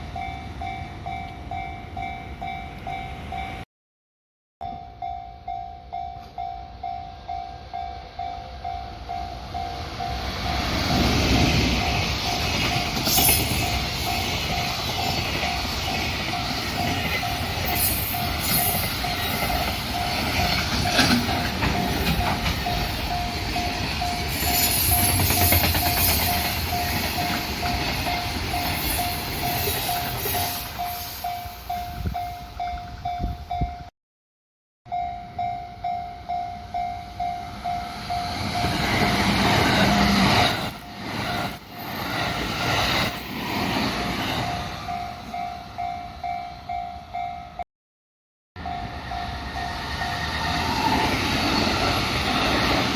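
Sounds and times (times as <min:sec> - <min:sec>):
electric train passing: 0:00.0 - 0:03.6, 0:05.0 - 0:33.9, 0:34.9 - 0:47.6, 0:48.6 - 0:52.9
level crossing warning bell: 0:00.0 - 0:03.6, 0:04.6 - 0:33.9, 0:34.9 - 0:41.0, 0:44.4 - 0:47.6, 0:48.6 - 0:50.4
train wheels clattering on rail joints: 0:10.6 - 0:30.5.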